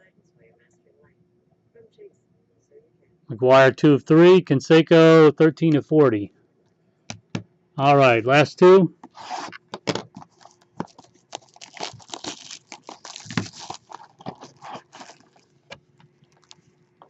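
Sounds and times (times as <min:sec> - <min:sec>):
packaging crinkling and tearing: 0:09.2 - 0:16.8.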